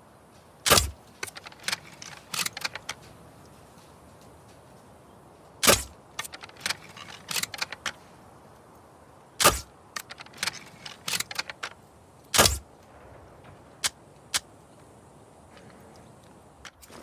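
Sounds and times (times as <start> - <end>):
mechanical clicks and rattles: 0.7 - 3.2, 5.6 - 8.0, 9.4 - 11.8
crossbow releases: 5.6 - 8.0, 9.4 - 12.6.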